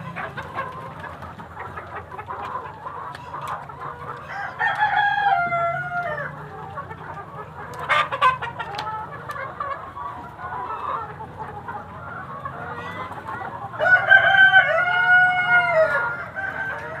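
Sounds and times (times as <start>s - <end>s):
chickens clucking: 0.0s - 17.0s
rooster crowing: 4.3s - 6.4s, 13.8s - 17.0s.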